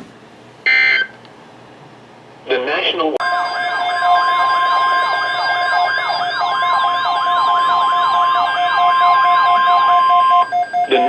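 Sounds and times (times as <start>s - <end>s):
siren alarm sweeping down: 0.7s - 1.1s, 3.2s - 11.0s
steady warning alarm tone: 0.7s - 1.1s, 3.2s - 11.0s.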